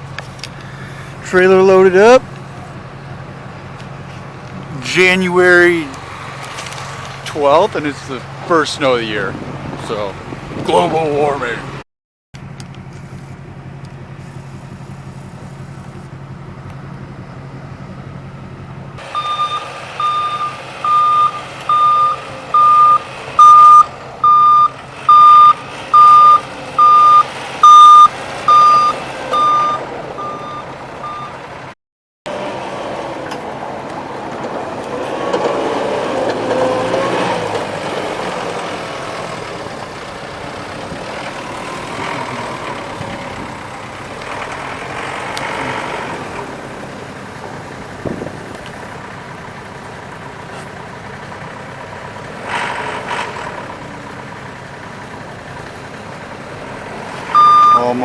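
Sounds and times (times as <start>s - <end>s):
engine running: 0.0s - 11.8s, 12.4s - 58.0s
vehicle backup alarm beeping: 19.0s - 31.4s, 57.3s - 58.0s.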